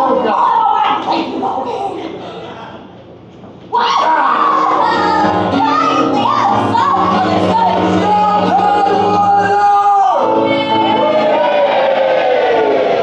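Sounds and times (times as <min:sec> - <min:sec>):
person singing: 0:04.5 - 0:11.3.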